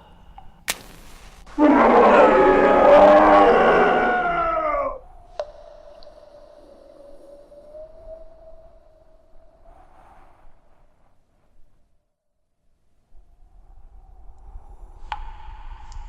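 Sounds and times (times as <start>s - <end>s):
sharp click: 0.7s - 1.4s
large animal roaring: 1.6s - 5.0s
faint steady tone: 5.0s - 11.7s.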